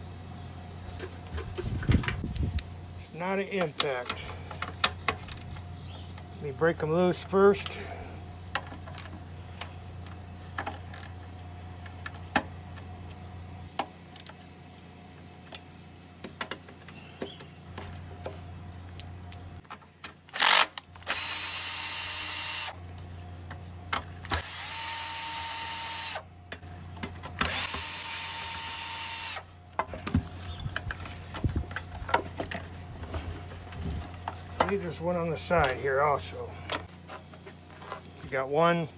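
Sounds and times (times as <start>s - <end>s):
cordless drill spinning bolts: 20.3s - 22.8s, 24.2s - 26.2s, 27.3s - 29.4s.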